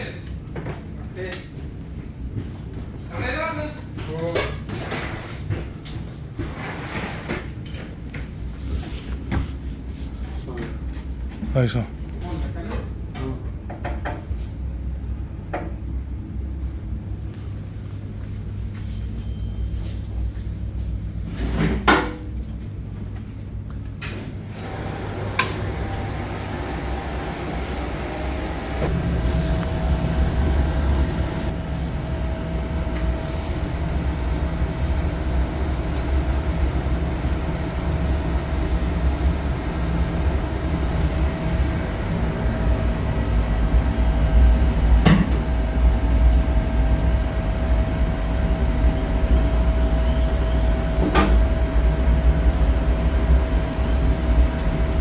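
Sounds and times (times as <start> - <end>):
low mechanical hum: 0.0 - 55.0
constant whine: 24.0 - 55.0.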